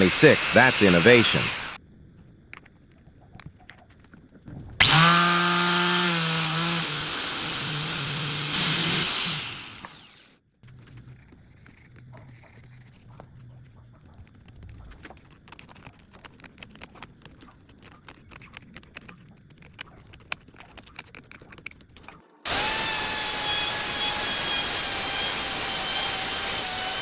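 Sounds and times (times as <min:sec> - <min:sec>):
angle grinder high whine: 0:00.0 - 0:01.8, 0:04.8 - 0:10.3, 0:22.5 - 0:27.0.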